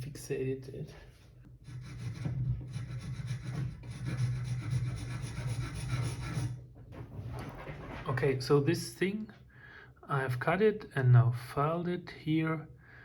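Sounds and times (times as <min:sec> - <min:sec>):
hand file rasping: 0:01.6 - 0:06.6.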